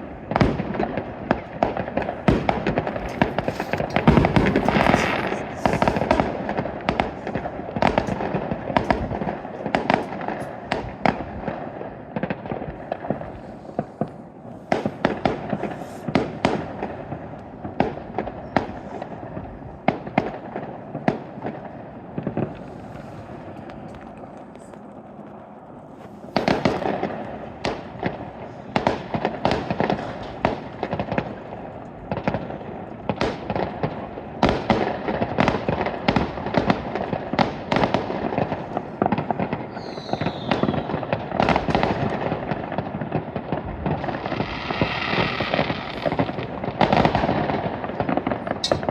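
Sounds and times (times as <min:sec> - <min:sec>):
fireworks booming and crackling: 0:00.0 - 0:48.9.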